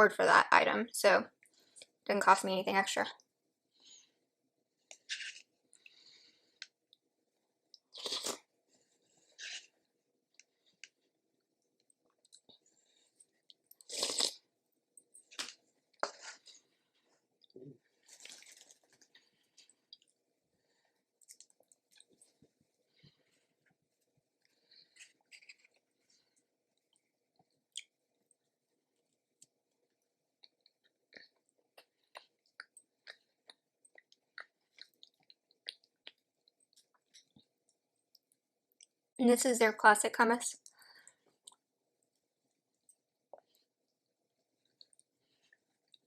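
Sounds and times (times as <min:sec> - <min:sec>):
person chewing food: 0:04.8 - 0:39.0, 0:40.6 - 0:46.0
crunchy bites and chewing: 0:04.9 - 0:05.5, 0:07.8 - 0:08.5, 0:09.4 - 0:09.7, 0:13.8 - 0:14.4.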